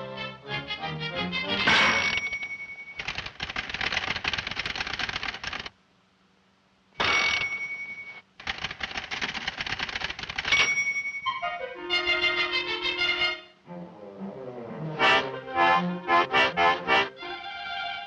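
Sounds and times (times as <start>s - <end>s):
high ringing tone: 1.7s - 3.1s, 7.0s - 8.3s, 10.5s - 11.5s
rapid mechanical clattering: 3.0s - 5.8s, 8.4s - 11.0s.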